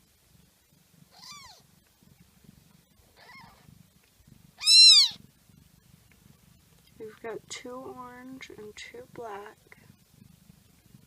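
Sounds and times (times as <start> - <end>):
kittens mewing: 1.1 - 1.6, 3.2 - 3.7, 4.6 - 5.2.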